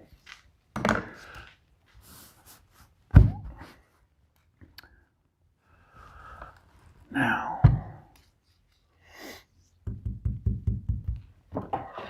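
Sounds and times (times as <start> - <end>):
parts knocking and thudding: 3.1 - 3.6, 9.8 - 12.0.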